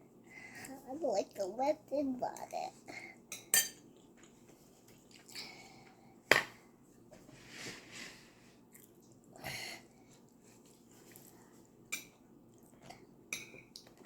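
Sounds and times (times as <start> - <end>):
chewing: 3.8 - 5.6, 8.7 - 9.3.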